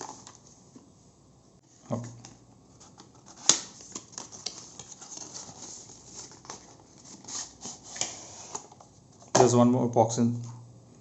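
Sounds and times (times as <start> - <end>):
packaging rustling: 2.7 - 8.9.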